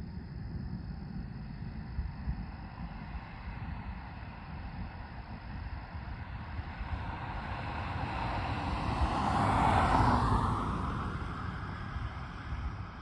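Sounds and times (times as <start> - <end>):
car passing by: 7.3 - 12.4.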